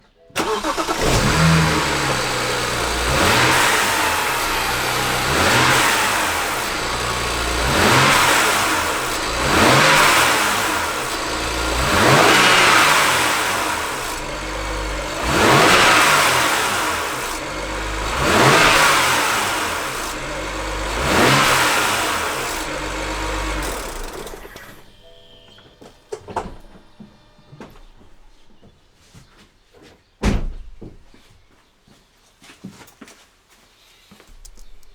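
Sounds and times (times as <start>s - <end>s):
car engine revving: 0.4s - 24.9s
engine rattle on overrun: 0.4s - 25.0s.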